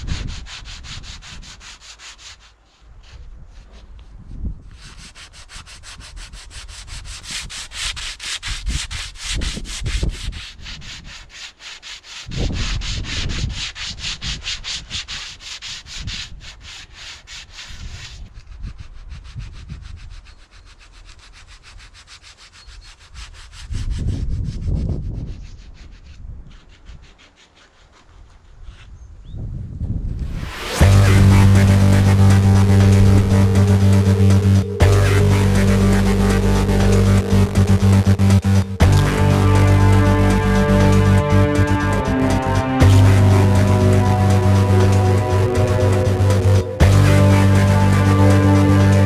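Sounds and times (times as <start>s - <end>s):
wood sanding rasp: 0.0s - 3.2s, 4.8s - 18.4s, 19.0s - 28.4s, 30.4s - 49.0s
low rumbles: 30.1s - 49.0s.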